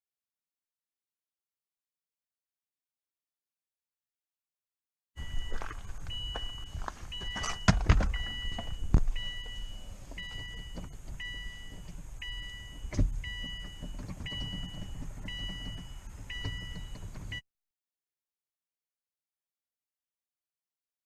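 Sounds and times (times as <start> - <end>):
low rumble: 5.2 - 13.8
two-tone electronic beep: 5.2 - 17.4
sharp knocks and thuds: 5.6 - 9.6.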